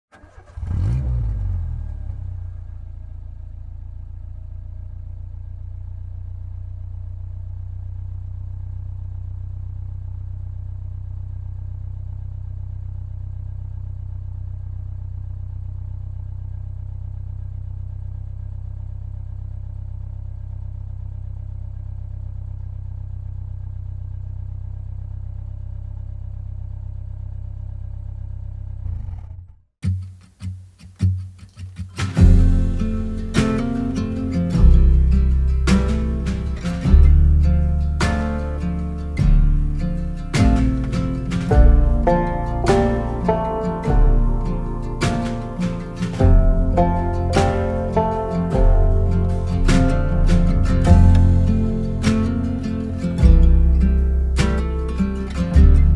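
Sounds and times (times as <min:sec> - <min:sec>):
car engine rumbling: 0:00.1 - 0:29.8, 0:32.0 - 0:55.9.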